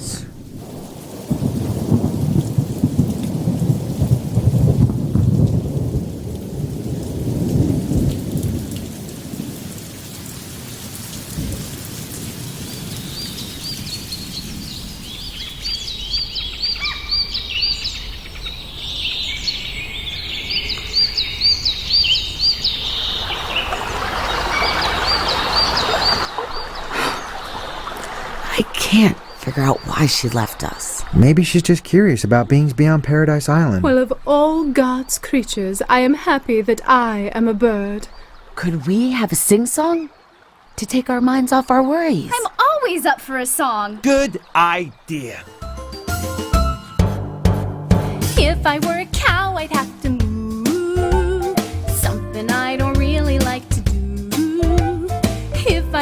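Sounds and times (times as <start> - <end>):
thunder rumbling: 0.0 - 16.3
steady rain: 0.0 - 45.6.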